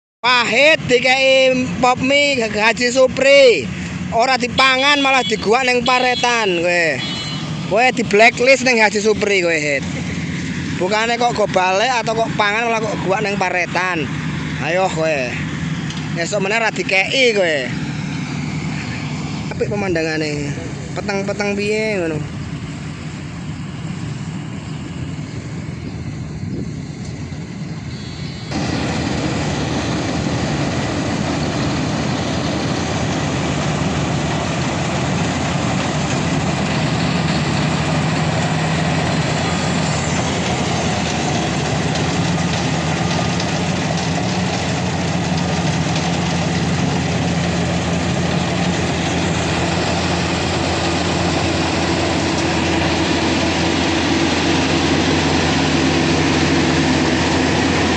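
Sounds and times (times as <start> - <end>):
combine harvester engine drone: 0.2 - 57.9.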